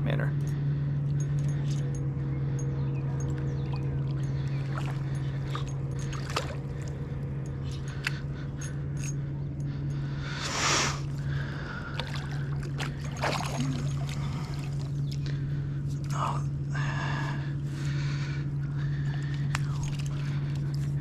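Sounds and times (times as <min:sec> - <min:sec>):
steady low hum: 0:00.0 - 0:21.0
water splashing: 0:03.7 - 0:06.9, 0:11.1 - 0:15.4.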